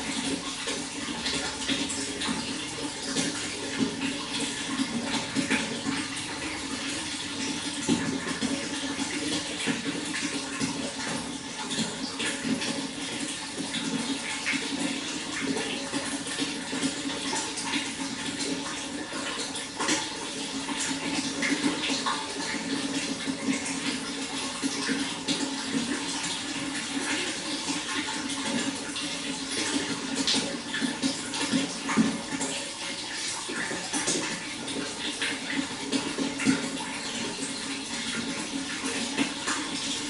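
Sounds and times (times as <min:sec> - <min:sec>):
running water splashing: 0:00.0 - 0:40.0.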